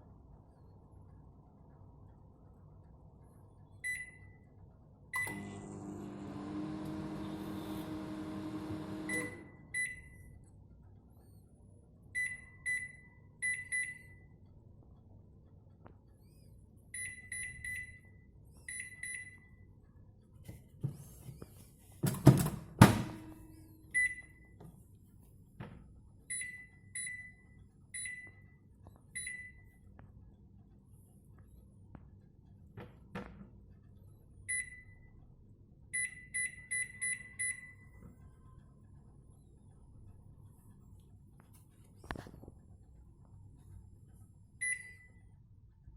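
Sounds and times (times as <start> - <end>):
microwave beeping: 5.2 - 10.3, 22.3 - 24.5, 36.0 - 37.9.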